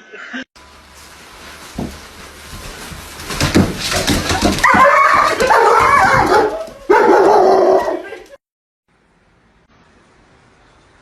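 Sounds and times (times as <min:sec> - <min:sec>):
knocks and rustles: 0:00.6 - 0:06.9.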